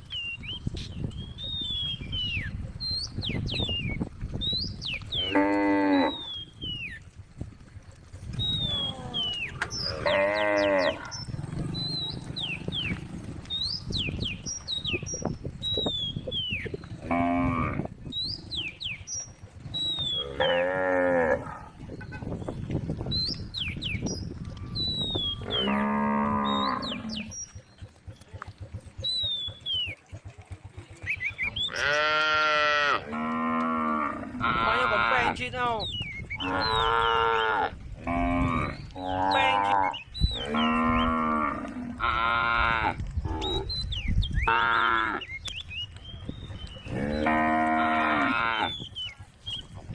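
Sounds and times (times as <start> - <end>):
small birds chirping: 0.0 - 49.9
cows mooing: 5.0 - 6.6, 8.5 - 13.5, 16.6 - 18.8, 19.8 - 21.8, 25.2 - 27.5, 31.6 - 35.4, 36.4 - 43.8, 44.4 - 45.4, 46.8 - 48.9.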